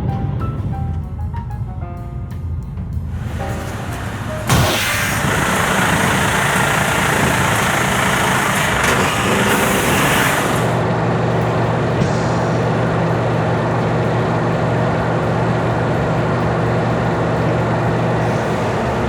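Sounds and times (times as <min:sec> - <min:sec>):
compressed air hiss: 0:03.1 - 0:10.8
diesel engine idling: 0:03.1 - 0:11.1.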